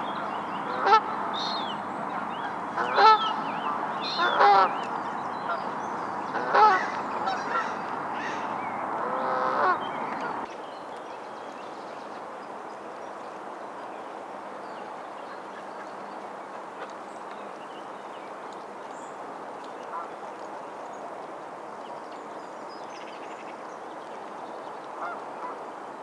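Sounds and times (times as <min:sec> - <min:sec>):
geese honking: 0:00.6 - 0:05.7, 0:06.3 - 0:10.5.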